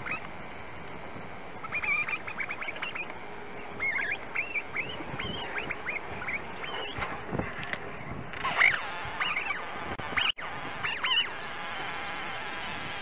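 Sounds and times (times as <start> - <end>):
steady background hiss: 0.0 - 13.0
birds calling sharply: 1.6 - 7.2.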